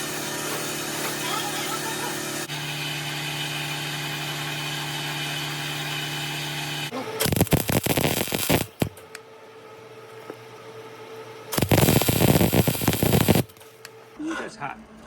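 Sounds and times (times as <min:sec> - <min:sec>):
die grinder humming: 0:00.0 - 0:09.0, 0:11.6 - 0:13.6
loud irregular crackling: 0:07.2 - 0:09.0, 0:11.6 - 0:13.6.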